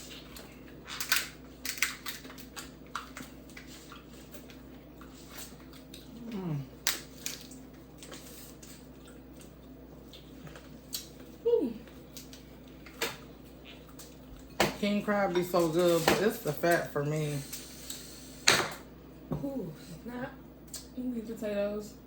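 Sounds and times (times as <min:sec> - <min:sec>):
crab shells cracking by hand: 0:00.9 - 0:03.3.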